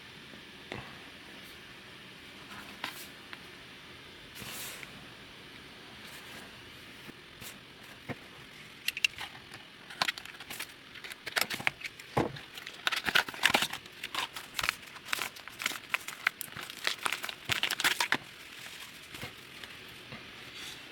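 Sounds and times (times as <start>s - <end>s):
packaging crinkling: 8.8s - 20.6s.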